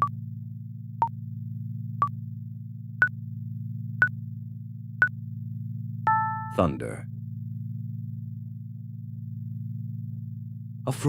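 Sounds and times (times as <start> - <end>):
short electronic beeps: 6.1 - 6.6.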